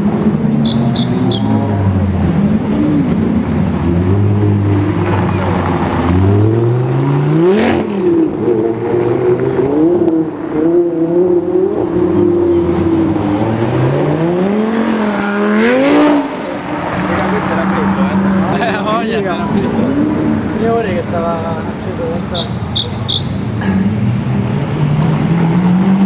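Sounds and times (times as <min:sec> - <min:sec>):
car engine revving hard: 0:01.3 - 0:18.6, 0:23.6 - 0:26.0.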